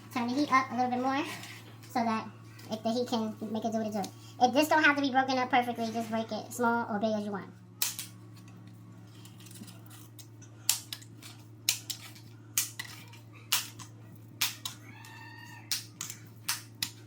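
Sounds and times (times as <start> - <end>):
dry noodles snapping: 9.4 - 14.9, 15.6 - 17.0.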